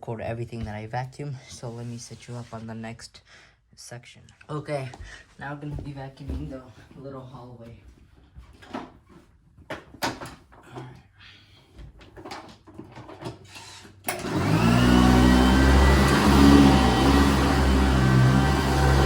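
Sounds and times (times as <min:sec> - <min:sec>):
vacuum cleaner running: 0:14.1 - 0:19.0.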